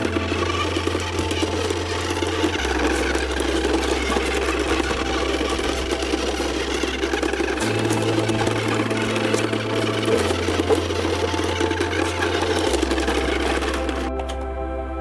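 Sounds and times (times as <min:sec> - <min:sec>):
toy car motor whirring: 0:00.0 - 0:14.4.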